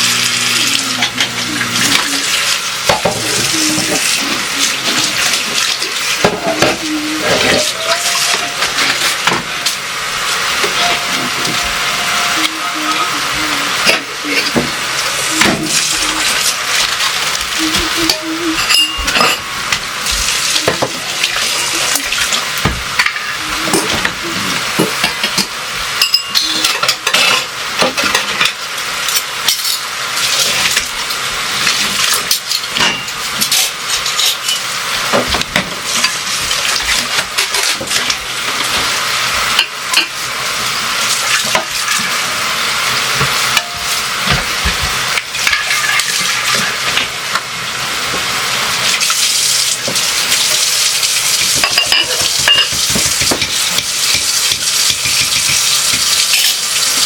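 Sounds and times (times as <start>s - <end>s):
dishes and utensils clinking: 0.5s - 9.8s, 10.5s - 31.0s, 31.6s - 38.9s, 39.5s - 40.2s, 43.1s - 47.4s, 49.8s - 57.0s
steady water hiss: 6.8s - 25.8s, 40.2s - 57.0s.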